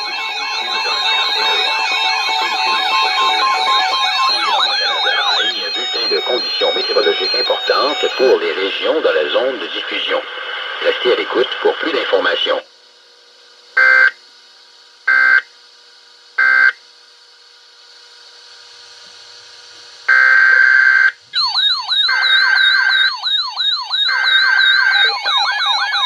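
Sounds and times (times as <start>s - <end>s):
warbling siren-like attention signal: 0.0s - 9.1s, 20.1s - 26.0s
data-tone bursts: 0.0s - 10.2s, 21.4s - 26.0s.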